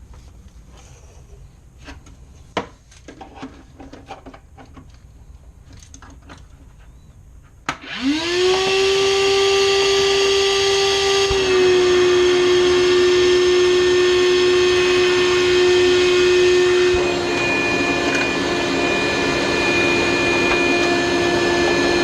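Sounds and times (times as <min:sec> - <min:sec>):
vacuum cleaner motor humming: 0:07.7 - 0:22.0.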